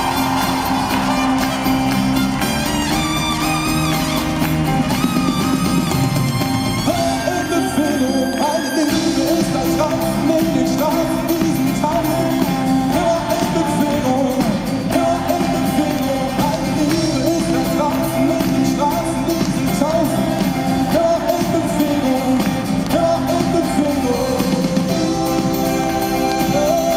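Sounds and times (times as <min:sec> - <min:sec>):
acoustic pop-rock band with singing: 0:00.0 - 0:26.9.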